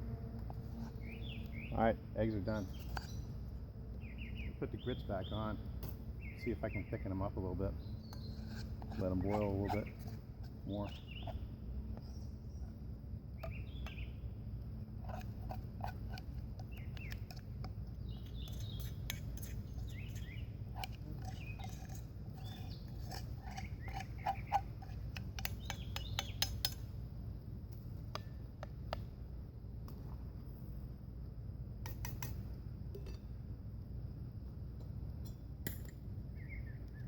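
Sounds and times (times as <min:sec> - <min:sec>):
birds chirping: 0:00.7 - 0:14.4, 0:15.0 - 0:26.8, 0:36.3 - 0:37.0.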